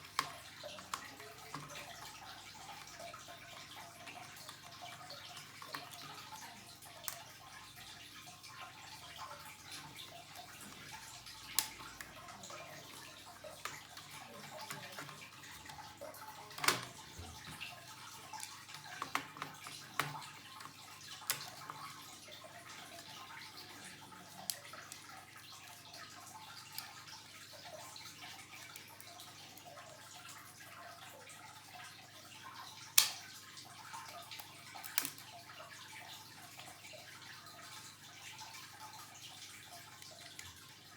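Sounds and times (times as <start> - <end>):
light clicks and taps: 0.0 - 7.4, 9.1 - 22.0, 34.3 - 35.3.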